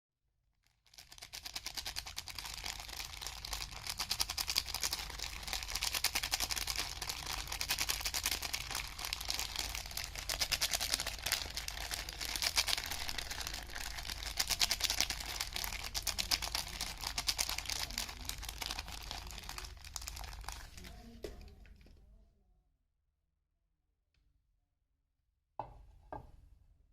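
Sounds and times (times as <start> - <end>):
packaging crinkling: 0.6 - 21.0.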